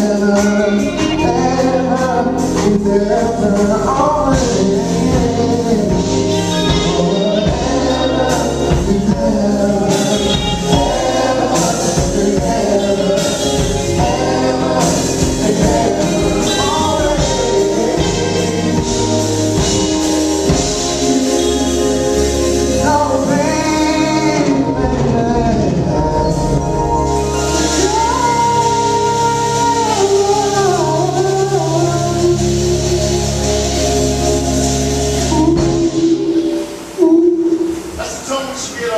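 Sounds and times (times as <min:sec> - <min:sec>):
bass line: 0:00.0 - 0:38.1
voices singing together: 0:00.0 - 0:38.6
funk band playing: 0:00.0 - 0:38.9.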